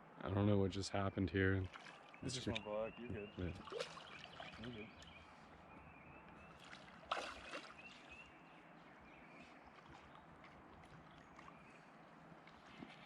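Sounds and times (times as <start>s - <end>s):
running water: 1.4s - 5.2s, 6.5s - 8.2s
water splashing: 1.6s - 5.2s, 6.5s - 8.2s.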